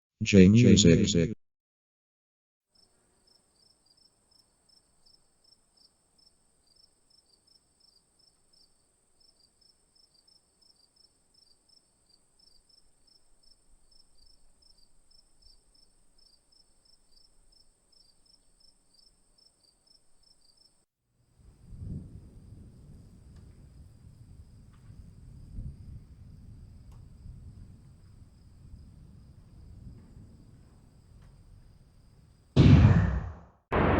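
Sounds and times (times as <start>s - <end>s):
crickets chirping: 2.8s - 32.5s
low storm rumble: 21.4s - 33.9s.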